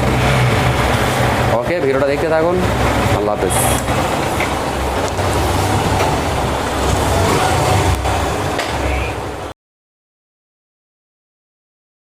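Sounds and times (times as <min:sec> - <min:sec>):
motorcycle engine rumbling: 0:00.0 - 0:09.5.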